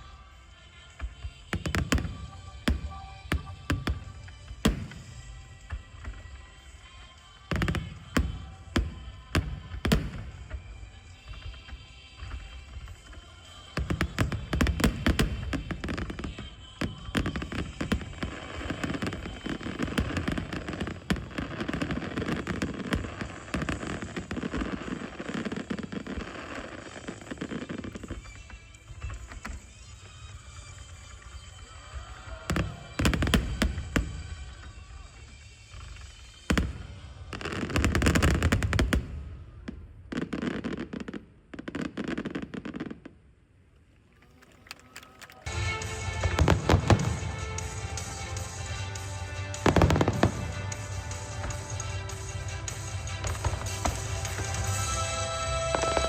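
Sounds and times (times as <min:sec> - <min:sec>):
fireworks popping and crackling: 0:00.0 - 0:56.0
firework bang: 0:45.5 - 0:56.0.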